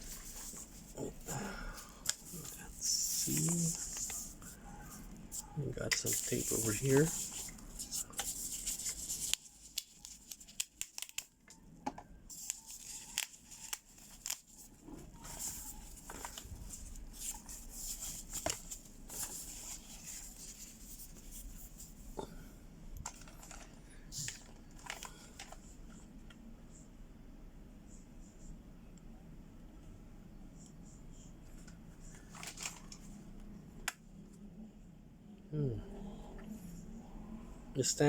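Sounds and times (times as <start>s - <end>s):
plastic crinkling: 5.3s - 11.3s, 12.3s - 21.5s
tape being peeled off: 5.3s - 11.3s, 12.3s - 16.4s.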